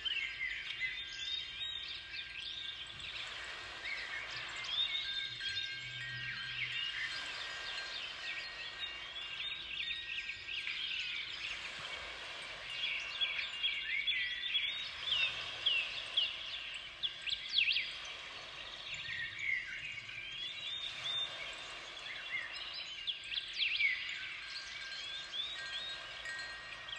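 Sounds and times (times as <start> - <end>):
small birds chirping: 0.0 - 26.9.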